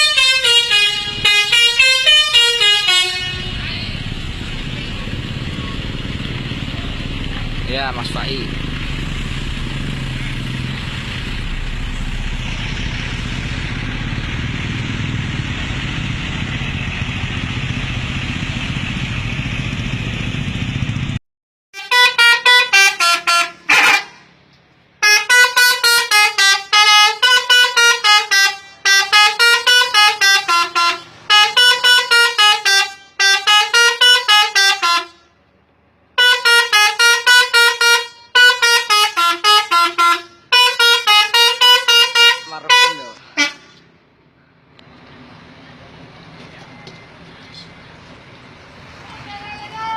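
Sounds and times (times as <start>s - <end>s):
multi-tone musical horn tune: 0.0s - 3.6s, 21.8s - 24.2s, 25.0s - 35.2s, 36.2s - 43.8s
steady rumbling noise: 0.7s - 21.2s.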